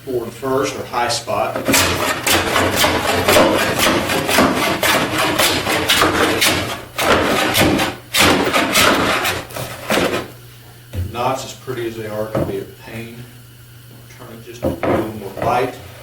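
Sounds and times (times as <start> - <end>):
hand plane rasping over wood: 1.6 - 10.3.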